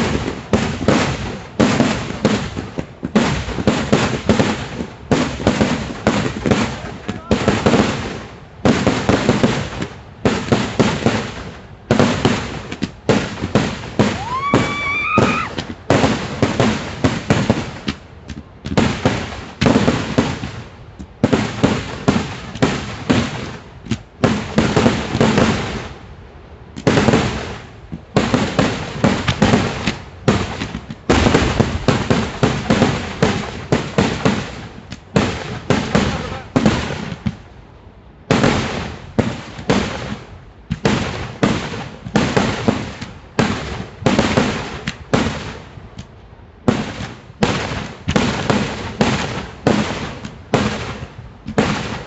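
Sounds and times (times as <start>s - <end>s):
firecrackers banging: 0.0s - 26.0s, 26.7s - 37.5s, 38.2s - 52.0s
rising firework whistle: 14.0s - 15.7s.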